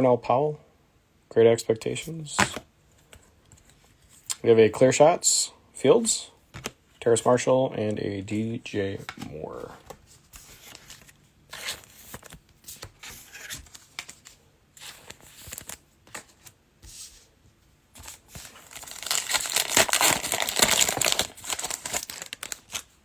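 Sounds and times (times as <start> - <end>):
card handling rustle: 2.2 - 4.2, 8.2 - 17.3, 18.0 - 23.0
foil wrapper crinkling and tearing: 18.1 - 23.0.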